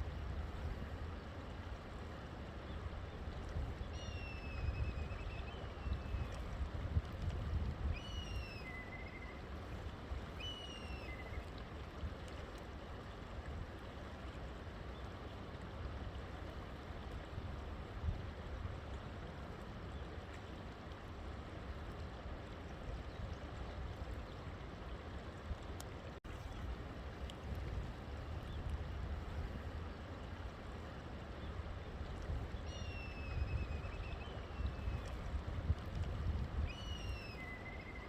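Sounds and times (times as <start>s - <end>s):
river water running: 0.0s - 38.0s
bird whistling call: 8.0s - 9.4s, 10.4s - 11.3s, 36.7s - 38.0s.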